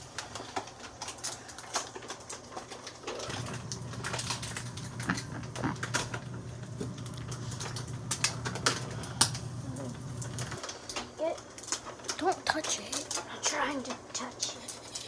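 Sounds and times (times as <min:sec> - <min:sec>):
kitchen clicks and pops: 0:00.0 - 0:13.2
low steady hum: 0:03.2 - 0:10.7.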